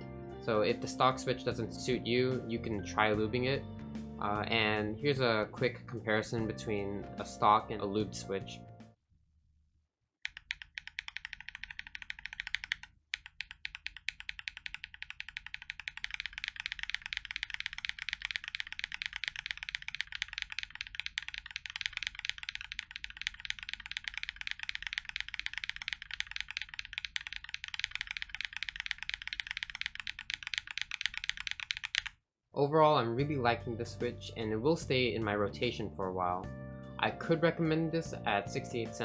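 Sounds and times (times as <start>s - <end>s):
fast mechanical keyboard typing: 10.2s - 32.2s.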